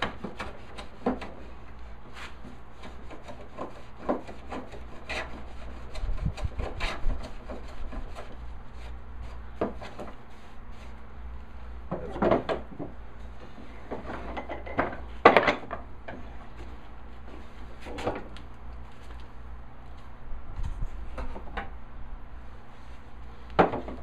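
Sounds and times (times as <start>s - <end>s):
hand plane scraping wood: 0.0s - 11.0s.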